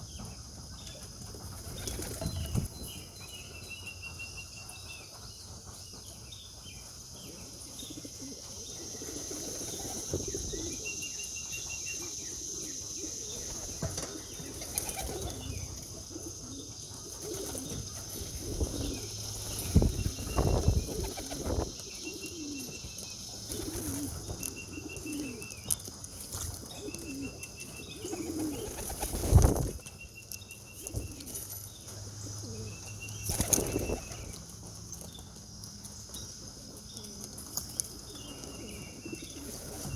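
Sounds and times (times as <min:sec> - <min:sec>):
pigeon wings flapping: 0:01.5 - 0:02.7, 0:28.1 - 0:29.8, 0:33.3 - 0:34.3
pigeons cooing: 0:07.2 - 0:29.9, 0:30.8 - 0:34.4, 0:36.6 - 0:39.9.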